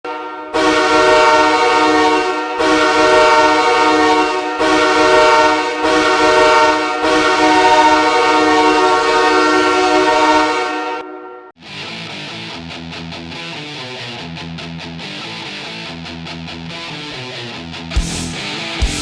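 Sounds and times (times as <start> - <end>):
goal horn blasting: 0.1 - 11.5.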